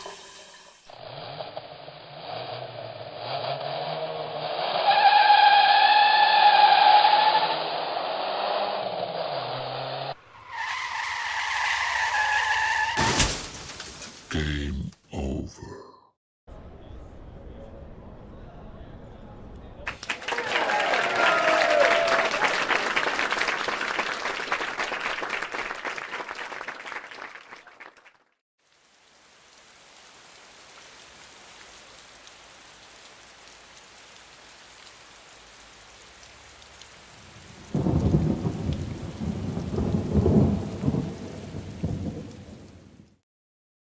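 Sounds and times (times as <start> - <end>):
brief gliding tones: 0.0 - 1.0
steady light rain: 20.0 - 25.3, 28.6 - 43.2
low rumble of thunder: 37.6 - 43.0.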